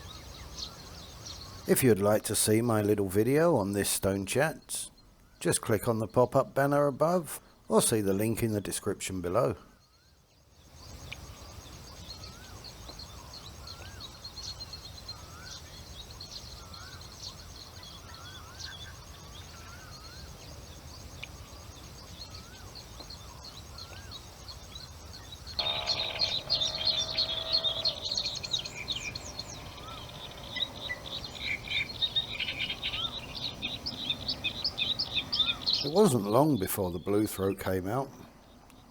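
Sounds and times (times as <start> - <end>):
many birds chattering: 0.0 - 9.7, 10.8 - 38.9
bird short rising chirps: 25.6 - 36.0
faint high bird notes: 25.6 - 37.4.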